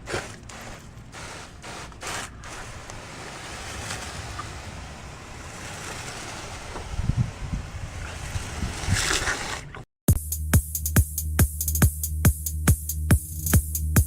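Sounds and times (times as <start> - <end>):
water spraying hiss: 0.0 - 9.7.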